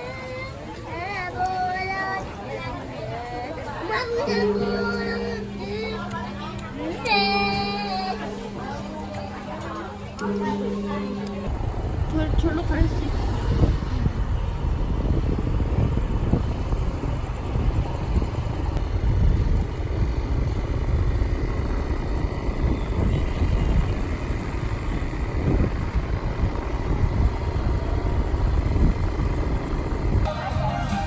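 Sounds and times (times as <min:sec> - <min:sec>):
road noise: 0:00.0 - 0:31.0
scooter engine running: 0:03.8 - 0:31.0
wind buffeting microphone: 0:11.4 - 0:30.3.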